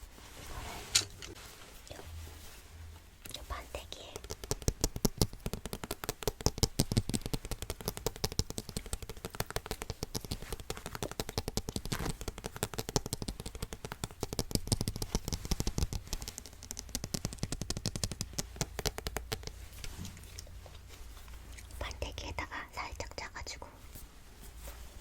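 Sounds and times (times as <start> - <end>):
tools scraping: 0.4 - 1.4.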